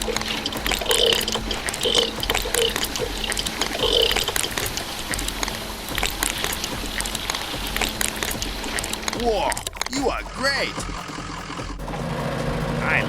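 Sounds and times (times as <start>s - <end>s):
liquid pouring and trickling: 0.0s - 9.9s.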